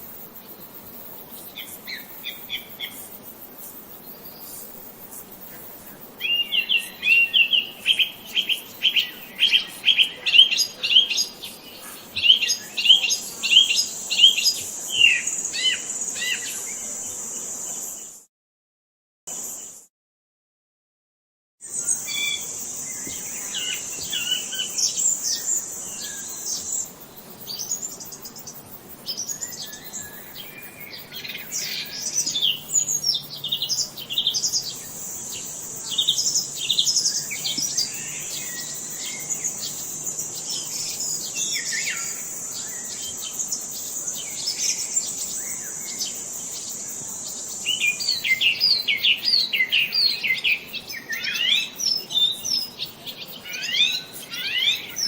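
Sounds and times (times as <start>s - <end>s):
songbirds chirping and singing: 6.3s - 16.9s, 21.8s - 55.0s.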